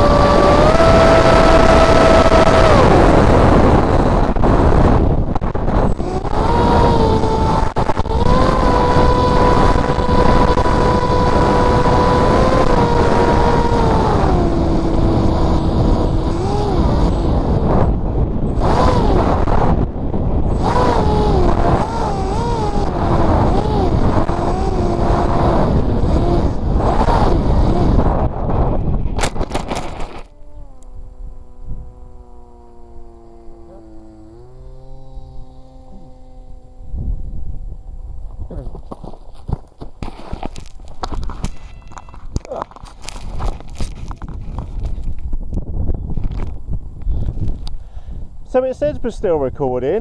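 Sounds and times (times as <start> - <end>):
electric motor propeller whine: 0.0 - 38.5
wind rush: 0.0 - 39.5, 40.8 - 49.7.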